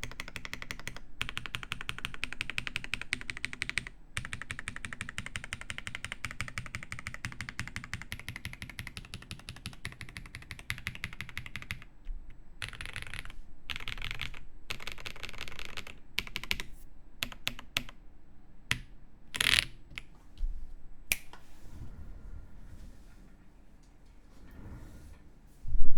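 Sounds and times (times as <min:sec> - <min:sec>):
mechanical keyboard typing: 0:00.0 - 0:11.9, 0:12.6 - 0:18.0, 0:18.7 - 0:19.7.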